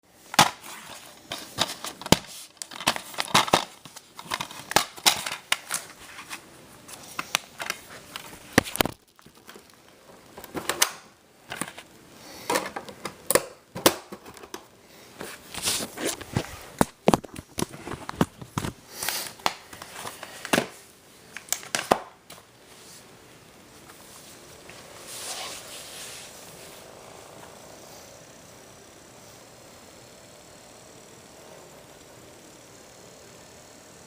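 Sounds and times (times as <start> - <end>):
plastic wrap tearing and crinkling: 7.2 - 9.9.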